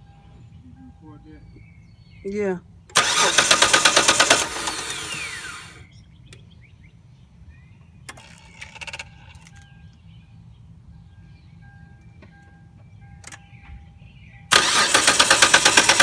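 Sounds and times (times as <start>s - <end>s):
car engine cranking: 2.9s - 5.8s, 14.5s - 16.0s
starter clicks: 3.0s - 5.8s, 14.5s - 16.0s.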